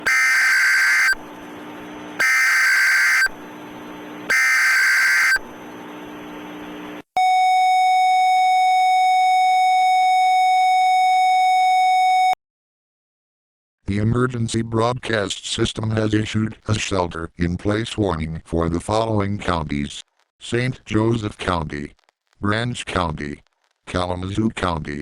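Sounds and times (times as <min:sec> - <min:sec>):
digital data tone bursts: 0:00.0 - 0:01.2, 0:02.2 - 0:03.4, 0:04.3 - 0:05.4
steady attention tone: 0:00.0 - 0:01.3, 0:02.2 - 0:03.4, 0:04.3 - 0:05.4.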